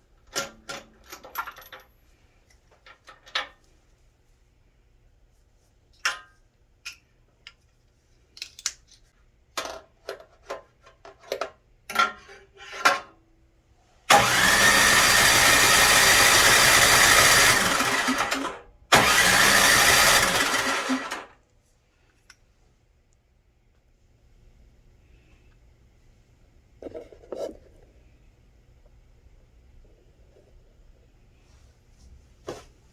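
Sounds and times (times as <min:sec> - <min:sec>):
snowblower engine turning over: 0:14.1 - 0:21.3.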